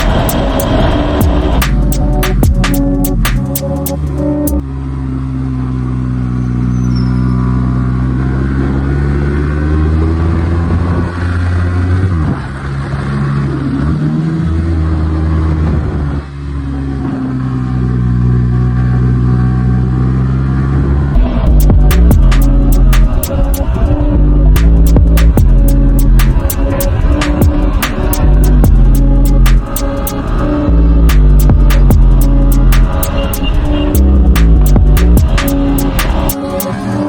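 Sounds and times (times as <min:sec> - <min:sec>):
motorcycle engine running: 0:00.0 - 0:06.5, 0:21.2 - 0:36.8.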